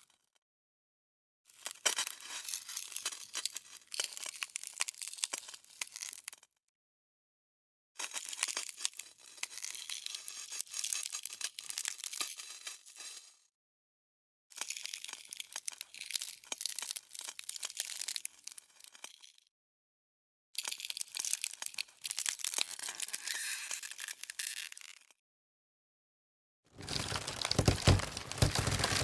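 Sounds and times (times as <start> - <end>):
dense crackling friction noise: 26.8 - 29.0.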